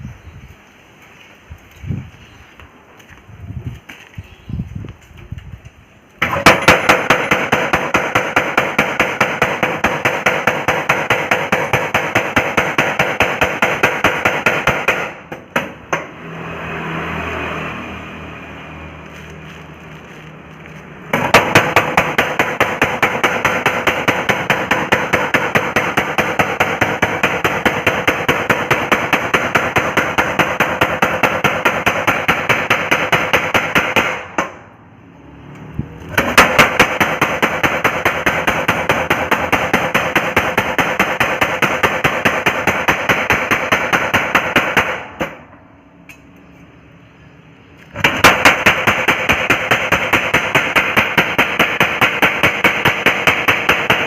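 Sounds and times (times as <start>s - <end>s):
power hammer pounding: 6.2s - 16.3s, 21.1s - 34.6s, 36.1s - 45.4s, 48.0s - 54.0s.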